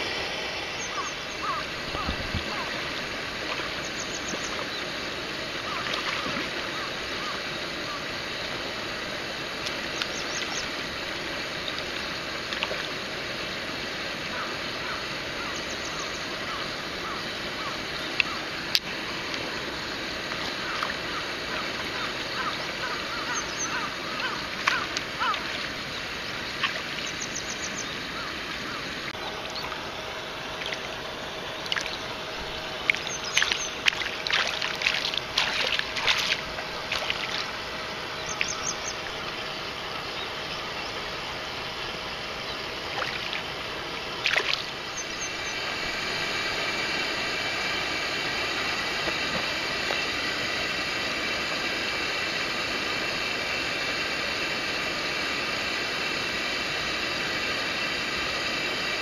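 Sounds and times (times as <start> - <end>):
stream water running: 0.0 - 59.0
small splashes and knocks: 5.8 - 6.6, 32.8 - 37.5, 42.8 - 43.5, 44.2 - 44.7.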